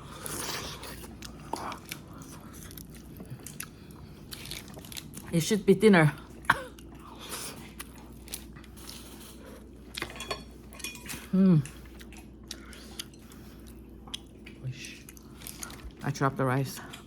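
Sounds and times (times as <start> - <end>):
chewing: 0.0 - 5.4, 6.2 - 16.0
cutlery clinking on dishes: 10.0 - 11.2.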